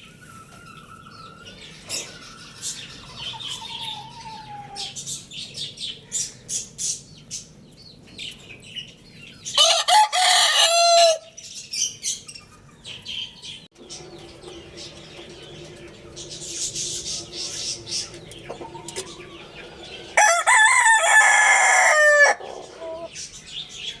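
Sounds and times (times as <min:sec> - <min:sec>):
chickens chirping and clucking: 0:00.0 - 0:24.0
rooster crowing: 0:09.6 - 0:11.4, 0:18.5 - 0:23.2.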